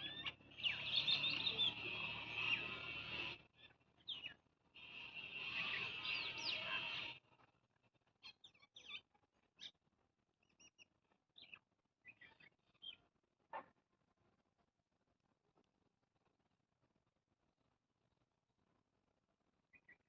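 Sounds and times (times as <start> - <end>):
small birds chirping: 0.0 - 9.8, 10.4 - 13.1, 19.7 - 20.0.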